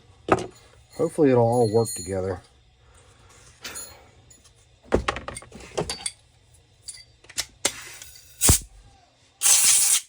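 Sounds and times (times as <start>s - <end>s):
small metal parts clinking: 6.8s - 7.4s.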